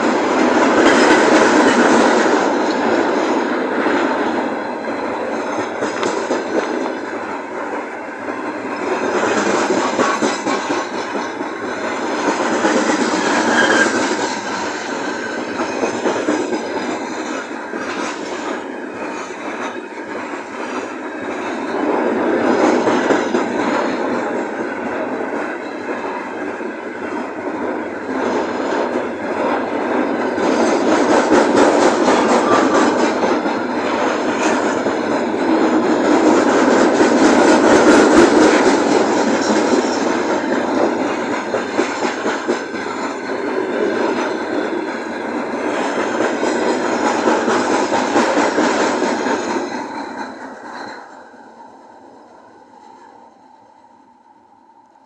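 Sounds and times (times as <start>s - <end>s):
train wheels clattering on rails: 0.0s - 53.8s.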